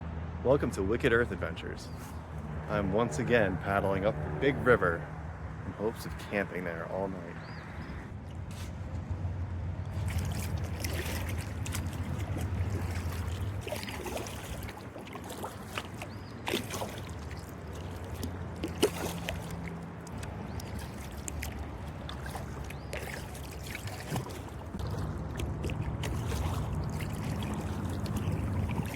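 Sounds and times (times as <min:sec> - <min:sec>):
low steady rumble: 0:00.0 - 0:07.0, 0:07.6 - 0:13.8
kayak paddle splashing: 0:09.9 - 0:28.9
water trickling off paddle: 0:09.9 - 0:28.9.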